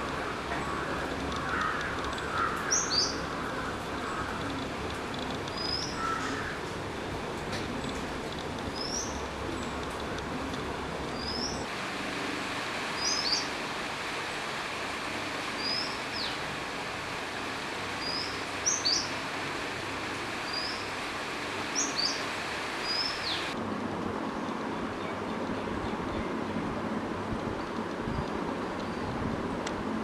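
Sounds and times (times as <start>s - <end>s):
rain hissing: 0.0s - 11.7s.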